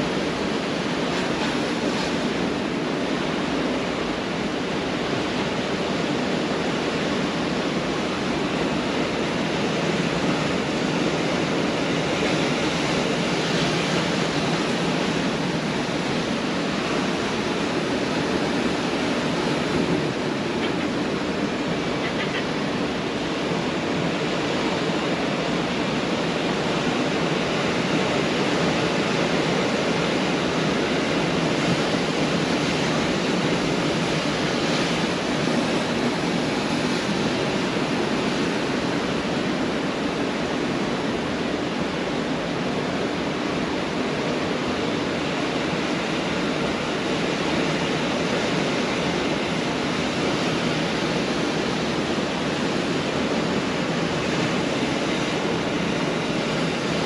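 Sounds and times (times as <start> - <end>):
ocean surf breaking on beach: 0.0 - 57.0.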